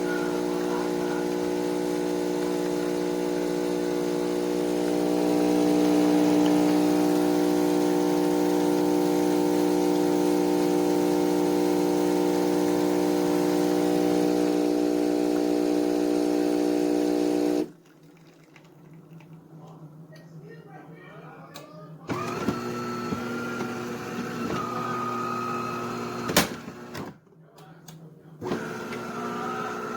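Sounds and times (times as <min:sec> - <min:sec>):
espresso machine humming: 0:00.0 - 0:17.7, 0:22.1 - 0:27.0, 0:28.4 - 0:29.9.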